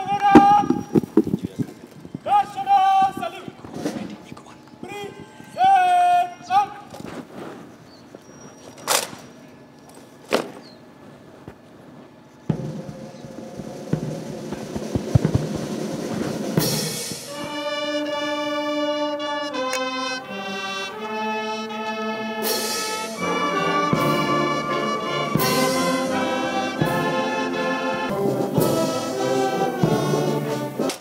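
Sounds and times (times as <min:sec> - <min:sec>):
sharp knocks: 0:12.5 - 0:16.5
brass band playing chords: 0:12.5 - 0:31.0.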